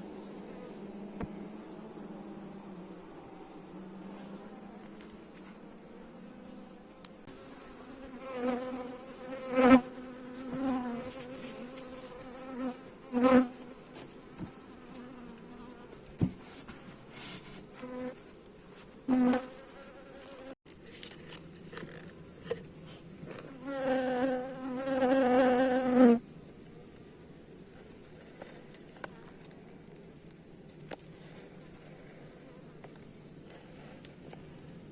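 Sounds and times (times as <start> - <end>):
bees buzzing: 0.0 - 13.7.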